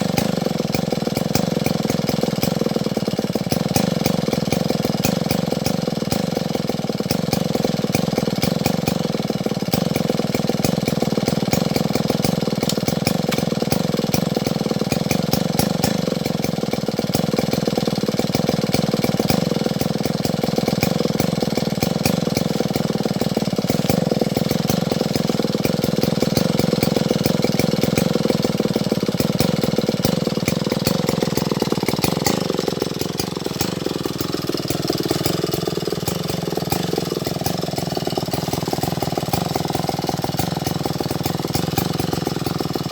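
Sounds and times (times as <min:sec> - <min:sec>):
chainsaw running at high speed: 0:00.0 - 0:42.9.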